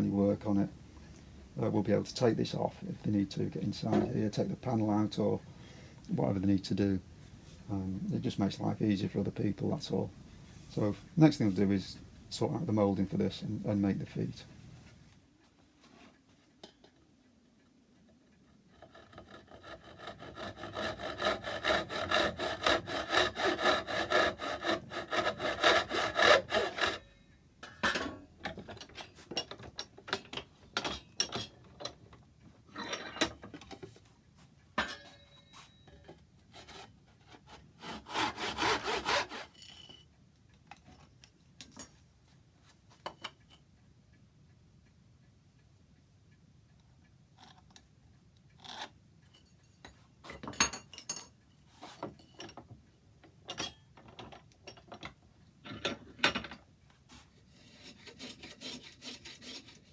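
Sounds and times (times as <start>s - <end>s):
saw cutting wood: 18.7s - 27.1s, 36.6s - 39.5s, 57.6s - 59.9s.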